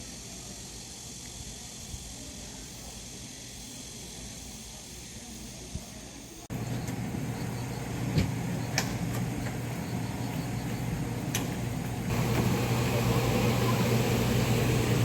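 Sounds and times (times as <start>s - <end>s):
train engine hum and rumble: 6.5s - 15.0s.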